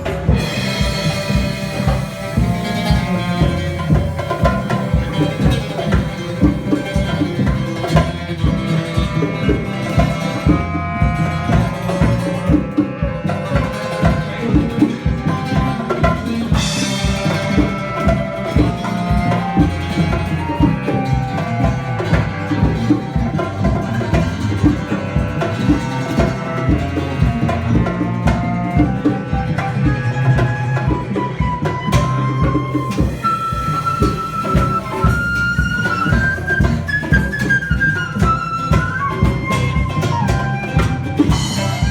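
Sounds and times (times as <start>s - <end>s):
cymbal crash: 0.0s - 7.2s
fast drumming: 0.0s - 41.9s
live band playing instrumental: 0.0s - 41.9s.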